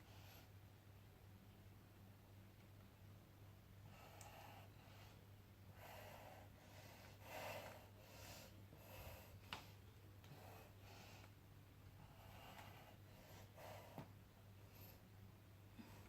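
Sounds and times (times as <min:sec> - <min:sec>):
low steady hum: 0:00.0 - 0:16.0
person breathing: 0:03.8 - 0:09.6, 0:12.0 - 0:15.1, 0:15.7 - 0:16.0.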